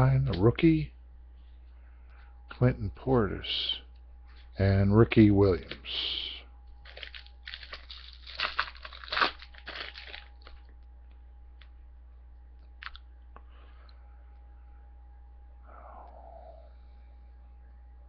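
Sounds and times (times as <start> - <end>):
foil wrapper crinkling and tearing: 6.8 - 10.7.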